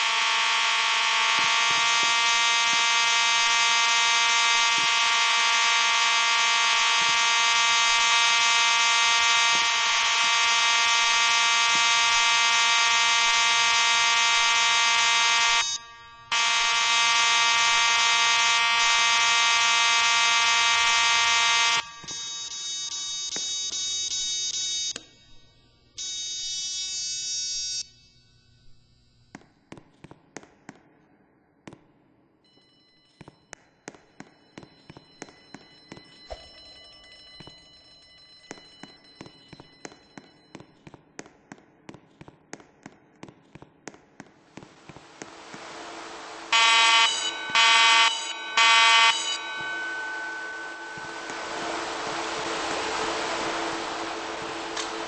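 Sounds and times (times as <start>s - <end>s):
buzzing alarm tone: 0.0s - 25.0s, 35.5s - 40.5s, 44.7s - 55.0s.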